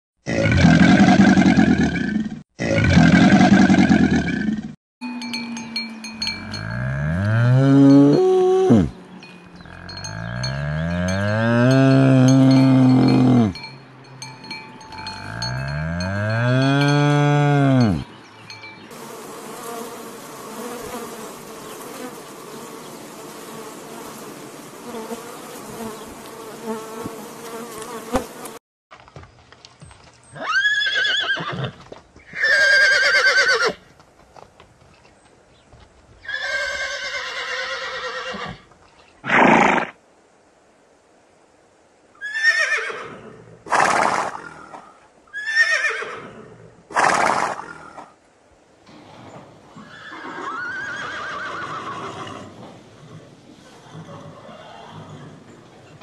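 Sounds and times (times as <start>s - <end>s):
steady insect buzz: 18.8s - 28.6s.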